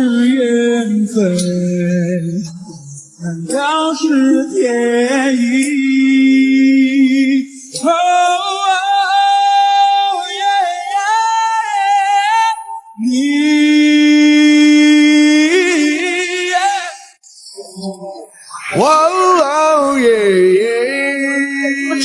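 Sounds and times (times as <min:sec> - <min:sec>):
person singing long notes: 0:18.7 - 0:22.0.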